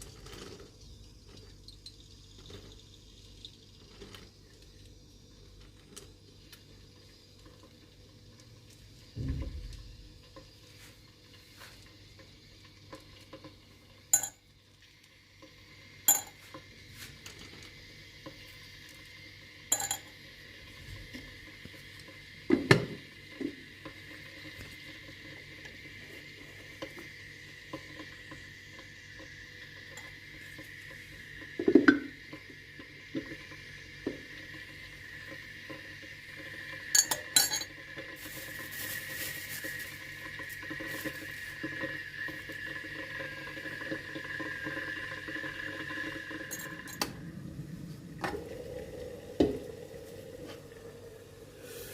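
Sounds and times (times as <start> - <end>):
dishes and cutlery clinking: 37.0 - 37.7.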